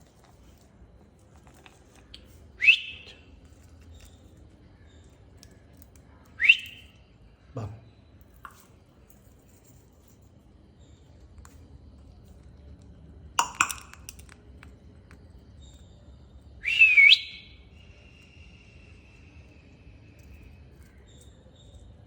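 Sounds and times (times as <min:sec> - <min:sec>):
parrot whistle calls: 0:02.6 - 0:03.2, 0:06.4 - 0:06.9, 0:16.6 - 0:17.6.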